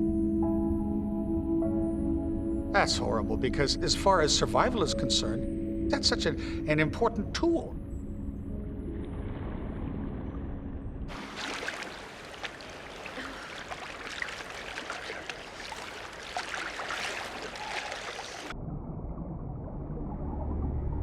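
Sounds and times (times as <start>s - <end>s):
sea water splashing: 8.8s - 18.7s
low rumble: 18.5s - 21.0s.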